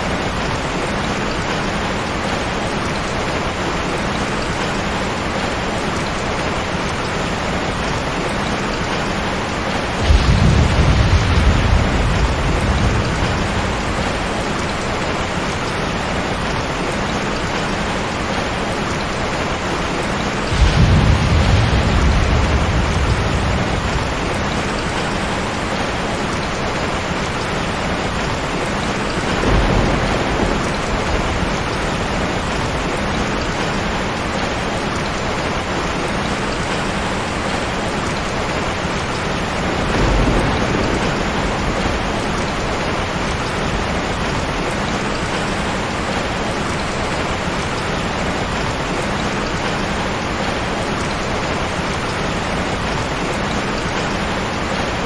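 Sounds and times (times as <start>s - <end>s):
heavy rain falling: 0.0s - 55.0s
low rumbles of thunder: 9.4s - 16.8s, 20.3s - 35.2s, 38.3s - 47.0s.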